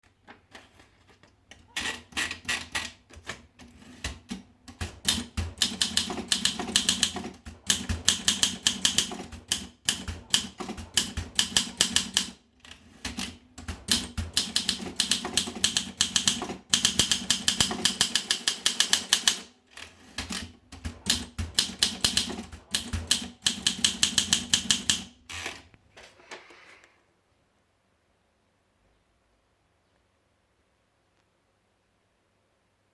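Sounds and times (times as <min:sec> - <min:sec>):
manual typewriter key strikes: 0:04.0 - 0:12.4, 0:13.0 - 0:19.5, 0:20.2 - 0:25.2.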